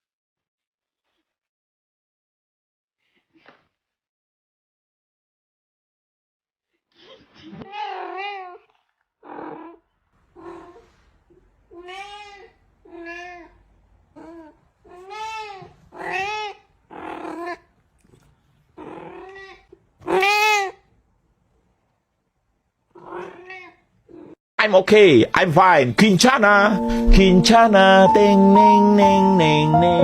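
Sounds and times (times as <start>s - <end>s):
cat meowing: 7.4s - 20.9s, 23.0s - 24.4s.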